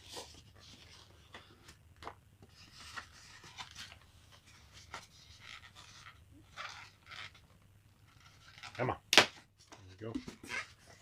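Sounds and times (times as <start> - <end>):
cardboard and foam rustling: 0.0 - 1.8.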